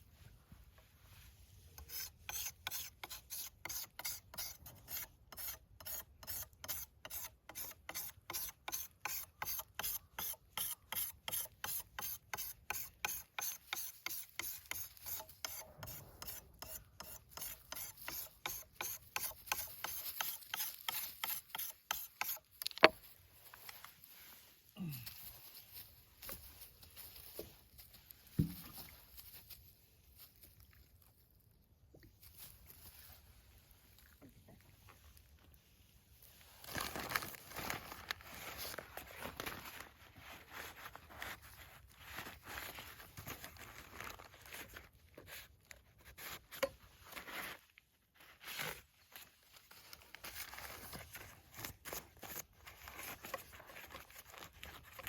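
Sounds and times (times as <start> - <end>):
blade stroking on sharpening stone: 1.8 - 22.5.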